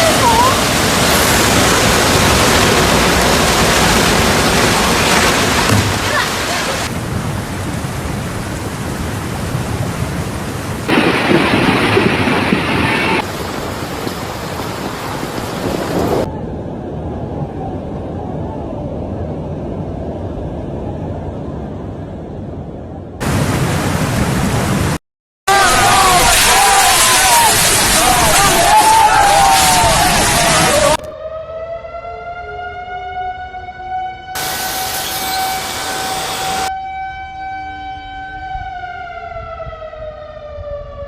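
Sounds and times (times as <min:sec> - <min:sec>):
heavy rain: 0:00.0 - 0:16.3, 0:23.2 - 0:31.0, 0:34.4 - 0:36.7
rushing floodwater: 0:00.0 - 0:16.3, 0:23.2 - 0:31.0.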